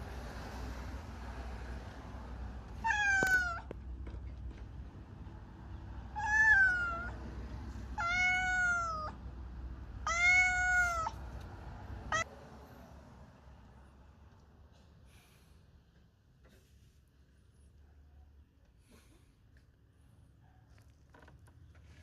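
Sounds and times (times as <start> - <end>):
cat meowing: 2.7 - 3.7, 6.1 - 7.2, 7.9 - 9.2, 10.0 - 11.2, 12.1 - 12.3.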